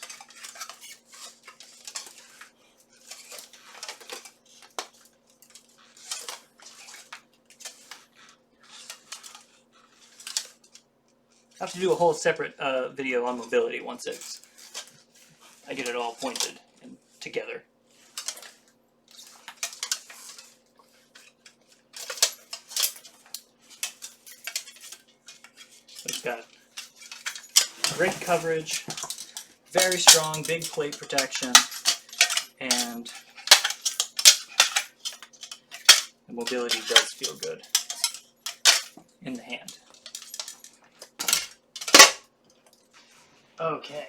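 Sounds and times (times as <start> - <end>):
metal plates clinking and rattling: 18.2 - 20.5, 21.9 - 39.0, 39.7 - 42.2.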